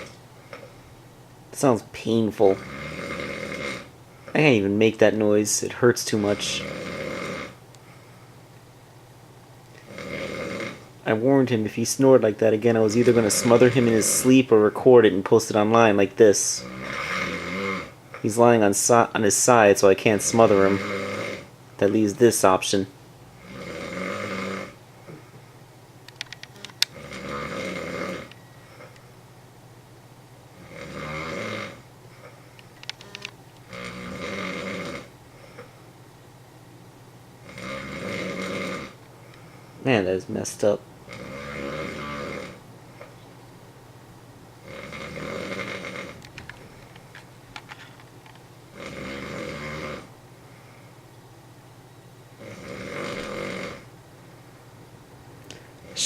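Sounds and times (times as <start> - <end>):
man snoring: 0.0 - 0.7, 1.6 - 4.7, 5.3 - 7.6, 9.8 - 21.5, 23.4 - 25.4, 26.9 - 29.0, 30.6 - 32.4, 33.7 - 35.7, 37.4 - 39.0, 40.7 - 42.6, 44.6 - 46.2, 48.7 - 50.1, 52.4 - 53.9
clicks: 26.0 - 27.0, 32.6 - 33.7
short clicks: 26.1 - 26.9.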